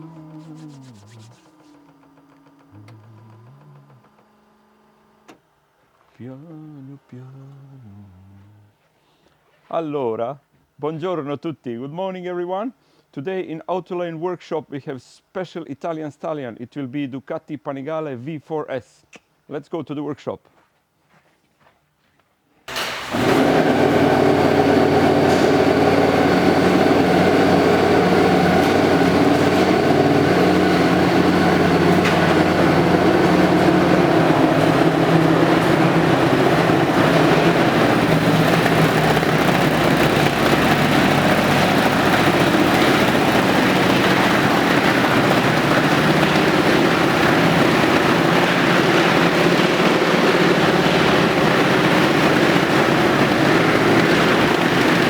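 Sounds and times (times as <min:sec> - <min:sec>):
engine running: 0:00.0 - 0:05.5, 0:22.7 - 0:55.0.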